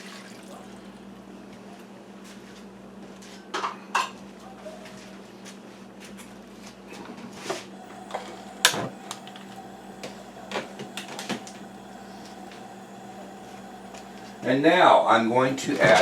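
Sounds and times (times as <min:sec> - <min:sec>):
steady low hum: 0:07.7 - 0:16.0.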